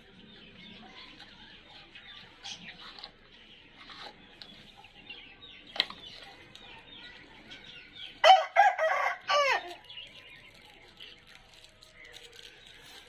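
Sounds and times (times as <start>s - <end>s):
rooster crowing: 8.2s - 9.7s.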